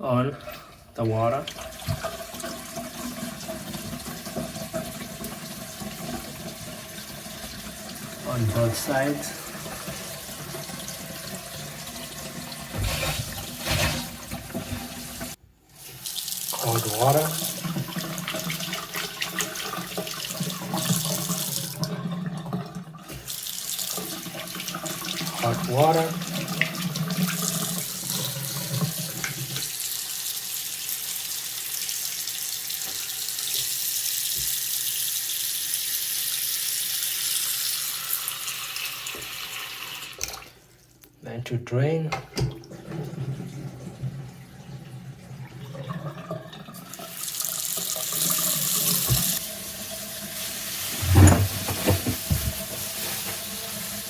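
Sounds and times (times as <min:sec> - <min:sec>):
faucet water running into sink: 0:00.4 - 0:40.6, 0:42.4 - 0:54.0.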